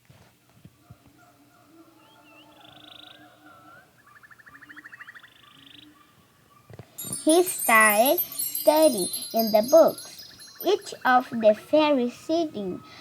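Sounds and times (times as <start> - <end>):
animal chirps and buzzing trills: 7.0 - 11.7.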